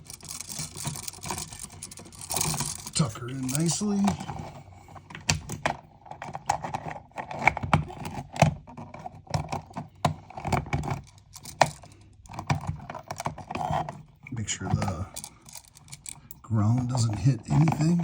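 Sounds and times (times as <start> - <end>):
wires and receptacle clicking and rattling: 0.0 - 18.0.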